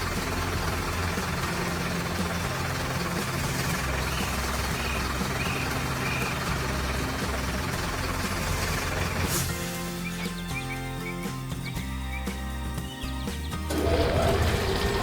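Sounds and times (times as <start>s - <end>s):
heavy machine engine idling: 0.0s - 9.8s, 13.7s - 15.0s.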